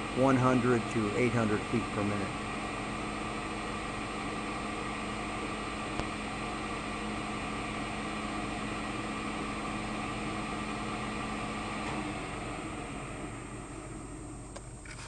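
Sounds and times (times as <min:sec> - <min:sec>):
band saw running: 0:00.0 - 0:02.7.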